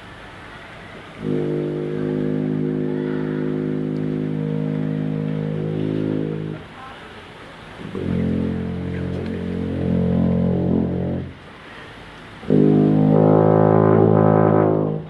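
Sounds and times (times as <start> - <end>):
low horn-like drone: 1.2 - 6.7, 7.8 - 11.4, 12.4 - 15.0.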